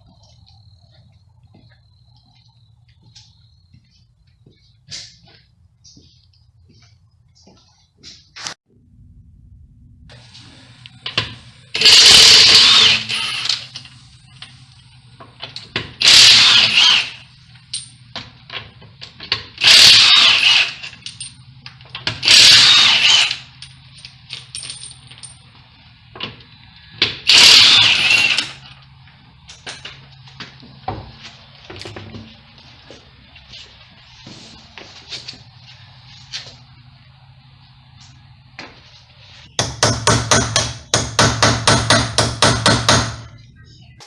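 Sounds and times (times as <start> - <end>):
impact wrench bursts: 11.7 - 13.9, 15.9 - 17.4, 19.6 - 21.1, 22.1 - 23.6, 27.0 - 28.8, 39.6 - 43.4.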